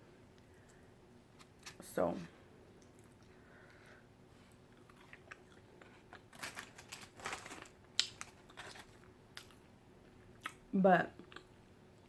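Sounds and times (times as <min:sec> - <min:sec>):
person chewing food: 0:02.8 - 0:06.4, 0:11.2 - 0:11.6
crunching: 0:04.8 - 0:09.6.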